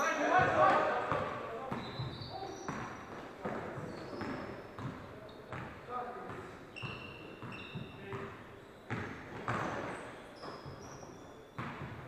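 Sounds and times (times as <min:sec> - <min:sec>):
sneakers squeaking: 0:00.0 - 0:12.0
basketball bouncing: 0:00.4 - 0:09.9, 0:11.6 - 0:12.0.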